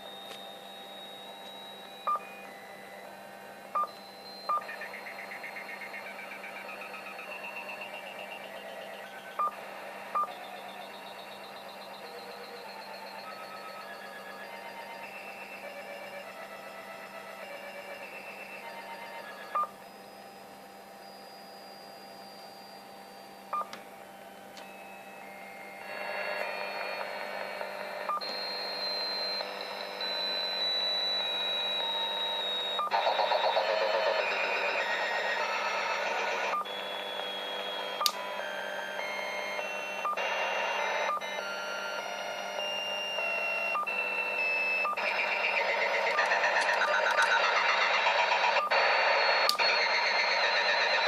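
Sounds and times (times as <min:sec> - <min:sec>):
radio whistling tones: 0:00.0 - 0:51.0
radio tones over hiss: 0:25.8 - 0:51.0.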